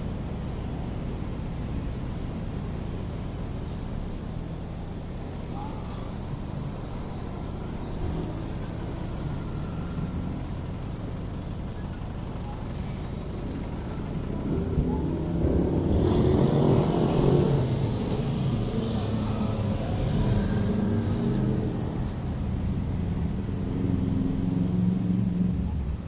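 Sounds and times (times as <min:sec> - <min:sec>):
city traffic rumble: 0:00.0 - 0:26.0
large vehicle passing: 0:12.4 - 0:25.2.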